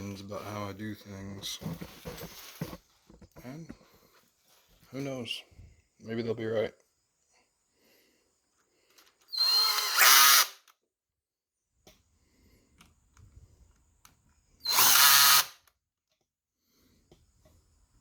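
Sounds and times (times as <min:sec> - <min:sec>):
power drill motor whining: 0:09.3 - 0:10.6, 0:14.6 - 0:15.6.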